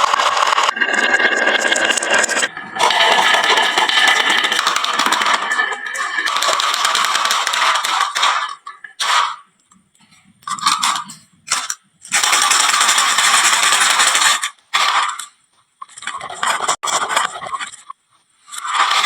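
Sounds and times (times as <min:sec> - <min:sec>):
marbles rolling on wooden run: 0:00.0 - 0:09.0.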